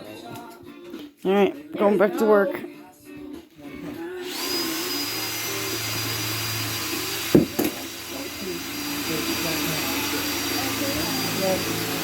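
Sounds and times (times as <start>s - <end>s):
power tool whirring: 4.2s - 12.0s
sharp knocks: 7.3s - 7.8s.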